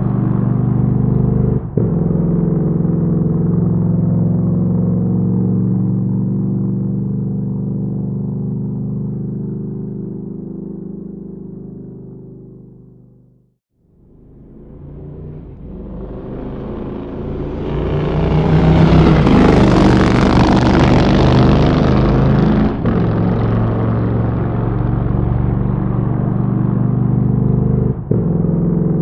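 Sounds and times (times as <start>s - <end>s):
motorcycle engine running: 0.0s - 29.0s.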